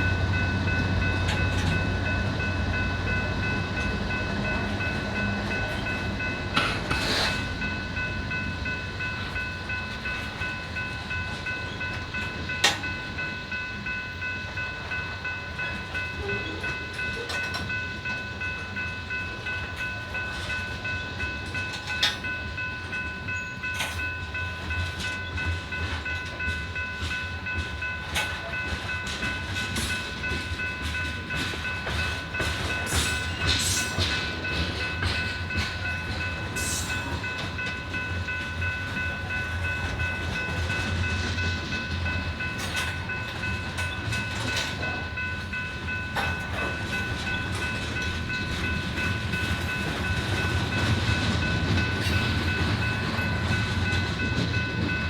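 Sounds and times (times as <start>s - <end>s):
freight train rumble: 0.0s - 55.0s
high-pitched ringing tones: 0.0s - 55.0s
wheels clacking over rails: 24.8s - 55.0s.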